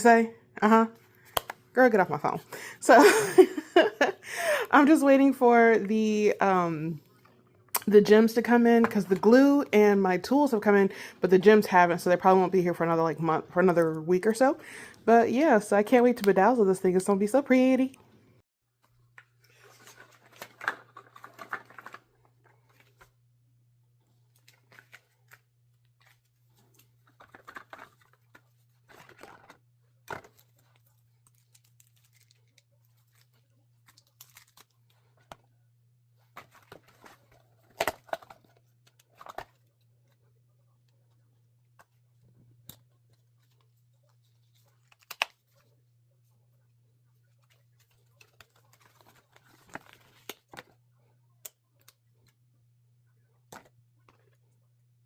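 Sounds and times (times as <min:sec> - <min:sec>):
rustling and crinkling: 0:18.8 - 0:23.2.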